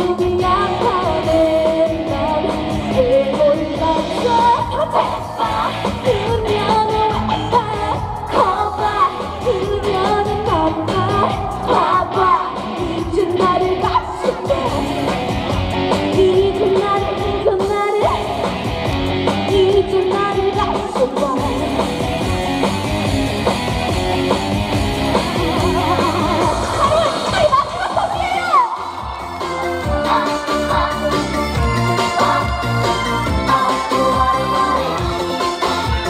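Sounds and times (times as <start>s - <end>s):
woman singing: 0.0s - 15.2s, 16.0s - 18.5s, 19.4s - 22.0s, 29.7s - 35.7s
backing music with steady beat: 0.0s - 36.0s.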